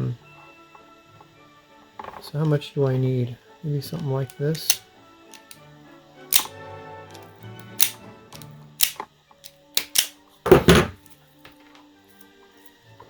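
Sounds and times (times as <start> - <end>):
background music: 0.0 - 13.0
clicks and knocks from handling tools: 4.2 - 5.6, 6.3 - 6.5, 7.1 - 11.9.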